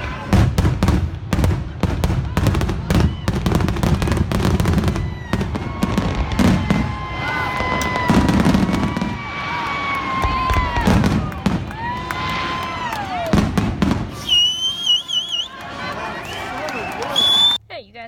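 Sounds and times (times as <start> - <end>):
fireworks booming: 0.0 - 12.6, 13.2 - 15.0
fireworks crackling: 0.0 - 17.6
fireworks whistling: 13.3 - 15.6, 16.2 - 17.6.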